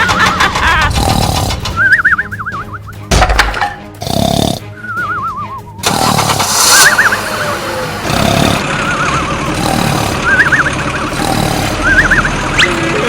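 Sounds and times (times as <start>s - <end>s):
small vehicle engine running: 5.8s - 13.0s.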